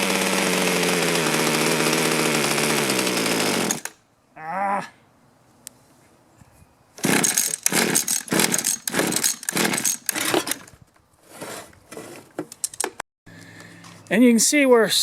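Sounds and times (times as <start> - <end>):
small two-stroke engine sputtering: 0.0 - 3.9.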